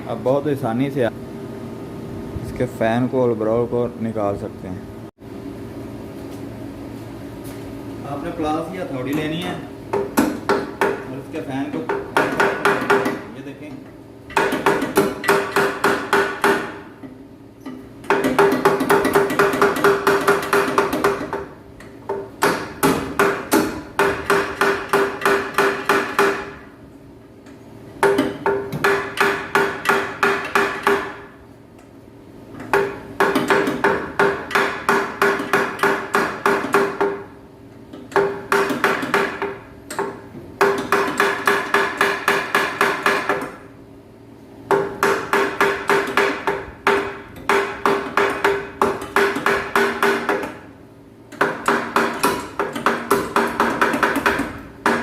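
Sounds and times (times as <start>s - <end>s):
hammer striking metal: 38.1s - 43.6s.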